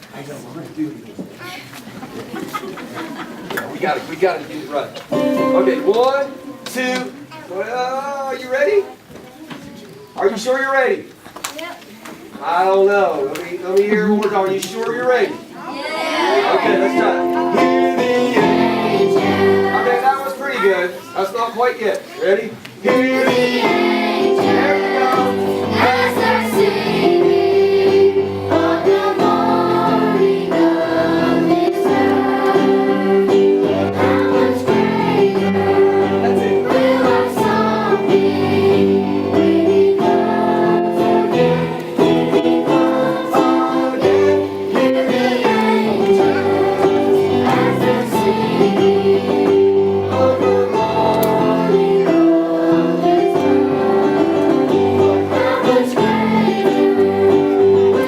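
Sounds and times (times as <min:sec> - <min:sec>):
children's choir singing: 0:05.1 - 0:07.2, 0:15.6 - 0:21.0, 0:22.8 - 0:58.0
instrumental backing music: 0:05.1 - 0:07.4, 0:16.5 - 0:20.3, 0:22.9 - 0:58.0.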